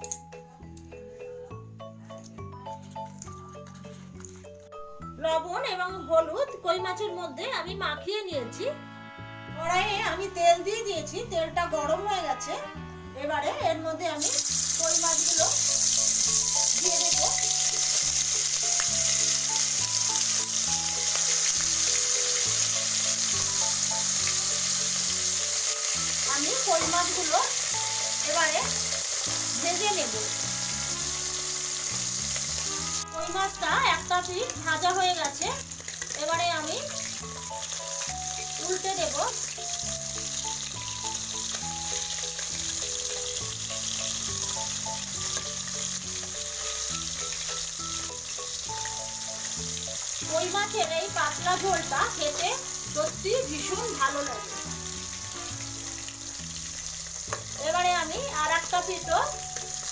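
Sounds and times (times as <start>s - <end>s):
soft background music: 0.0s - 59.9s
fish frying in hot oil: 14.2s - 59.9s.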